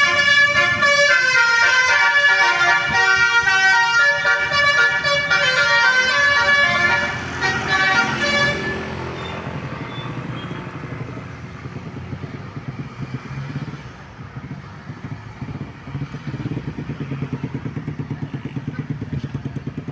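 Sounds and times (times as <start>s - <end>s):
multi-tone musical bus horn: 0.0s - 10.7s
vehicle engine running: 0.0s - 19.9s.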